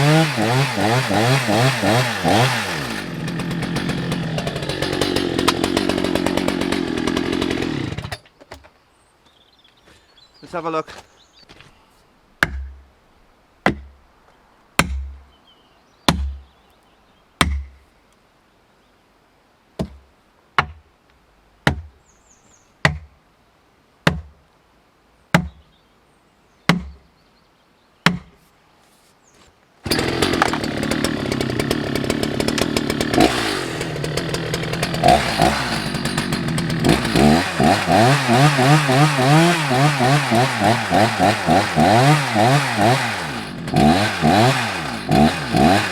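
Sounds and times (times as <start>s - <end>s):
chainsaw running and cutting: 0.0s - 8.2s, 29.8s - 45.9s.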